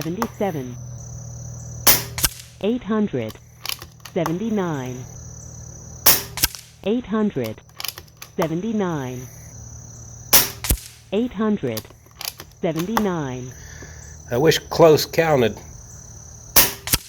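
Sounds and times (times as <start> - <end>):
air rifle shot crack: 1.8 - 2.6, 6.0 - 6.9, 10.3 - 11.2, 16.5 - 17.0.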